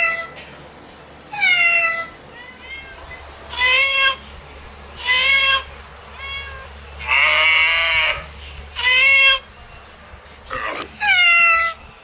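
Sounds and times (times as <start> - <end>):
cat meowing: 1.4 - 4.2, 5.0 - 8.2.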